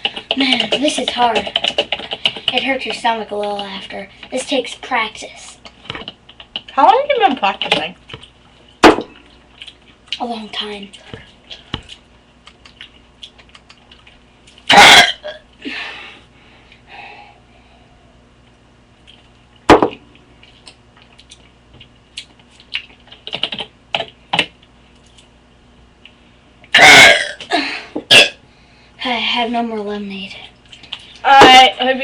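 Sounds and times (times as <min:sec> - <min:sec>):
boy burping: 0:14.7 - 0:15.4, 0:26.8 - 0:28.4.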